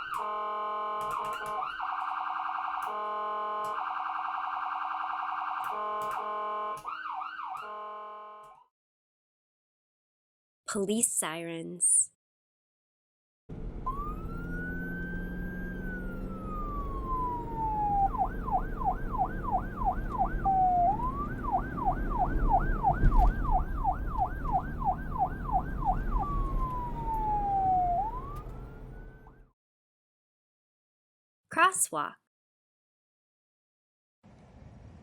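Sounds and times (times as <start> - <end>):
police siren wailing and yelping: 0.0 - 8.6, 13.8 - 29.5
vehicle rumble: 13.5 - 29.5, 34.3 - 35.0.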